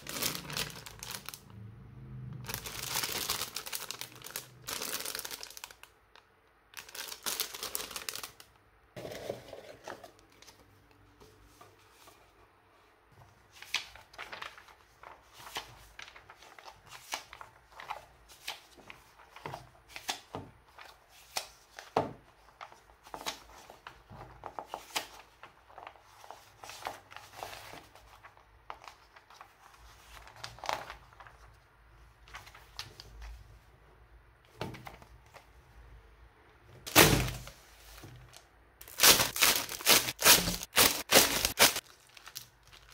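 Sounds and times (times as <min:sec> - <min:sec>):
plastic bags crinkling: 0:00.0 - 0:01.5, 0:02.4 - 0:06.0, 0:06.8 - 0:08.5, 0:38.3 - 0:42.9.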